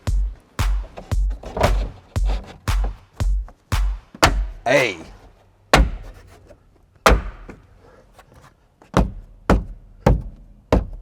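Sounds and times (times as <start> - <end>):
plastic trim knocks: 4.1 - 4.6.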